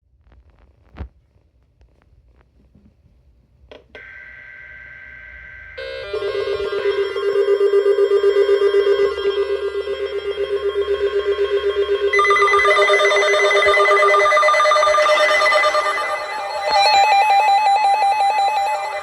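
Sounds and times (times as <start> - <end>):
pulsing electronic alert tone: 4.5 - 19.0.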